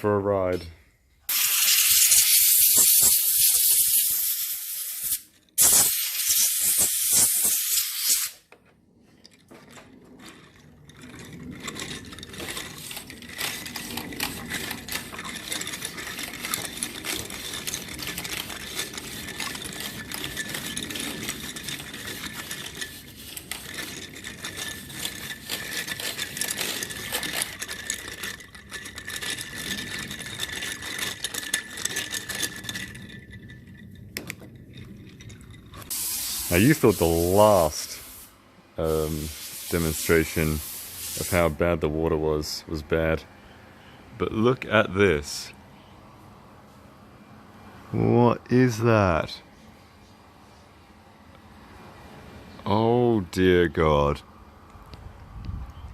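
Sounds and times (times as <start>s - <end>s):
loud hiss: 1.3s - 8.4s, 35.9s - 41.5s
small hard objects rattling: 9.0s - 37.7s.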